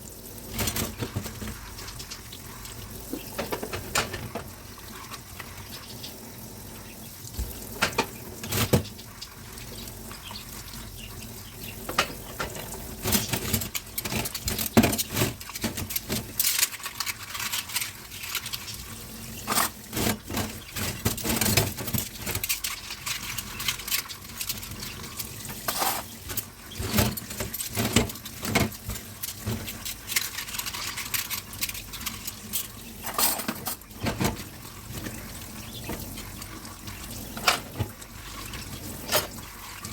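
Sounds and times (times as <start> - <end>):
running water hiss: 0.0 - 13.5
dishes clinking in a sink: 3.1 - 4.5, 11.8 - 16.2, 25.5 - 29.6, 33.0 - 35.1, 37.3 - 38.0.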